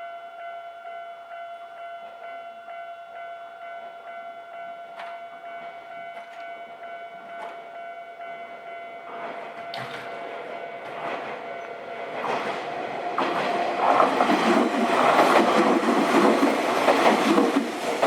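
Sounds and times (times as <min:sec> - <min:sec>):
level crossing warning bell: 0:00.0 - 0:12.2
train approaching: 0:00.0 - 0:18.0.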